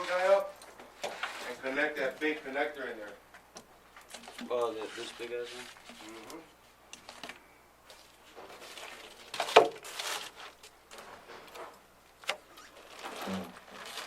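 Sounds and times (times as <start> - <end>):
wiring harness rustling: 3.9 - 14.0.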